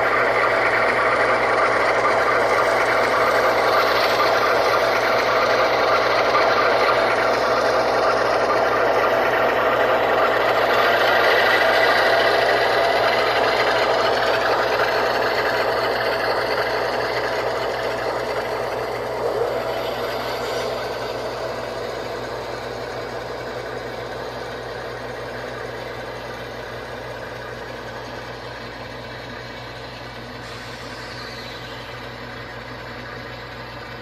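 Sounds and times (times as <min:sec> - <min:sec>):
diesel engine drone from small speakers: 0:00.0 - 0:34.0.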